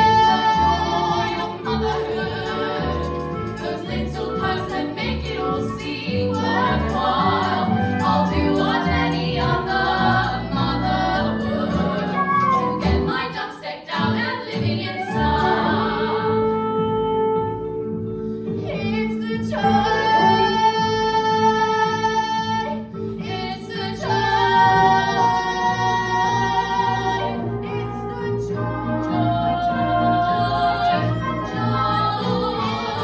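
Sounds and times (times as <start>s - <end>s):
voices singing: 0.0s - 17.1s, 18.7s - 33.0s
instrumental accompaniment: 0.0s - 33.0s.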